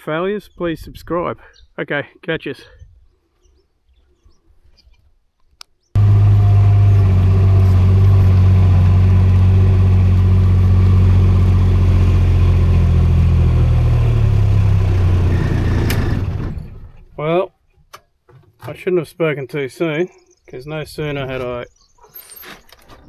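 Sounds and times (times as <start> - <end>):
engine humming steadily: 6.0 - 17.2.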